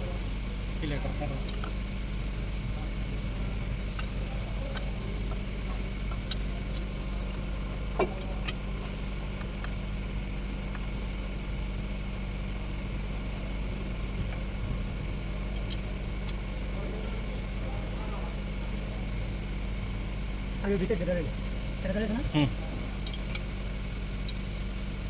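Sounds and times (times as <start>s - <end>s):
engine idling: 0.0s - 25.0s
metallic tool clicks: 23.1s - 23.4s.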